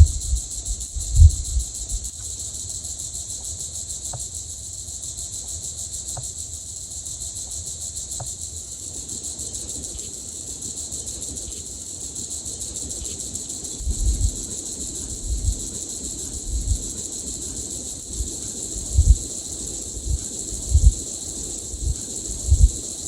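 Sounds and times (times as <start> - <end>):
night insects trilling: 0.0 - 23.0
low rumble: 1.0 - 1.7, 13.8 - 14.4, 15.1 - 15.7, 16.4 - 16.9, 18.1 - 19.2, 20.0 - 21.0, 21.8 - 22.8.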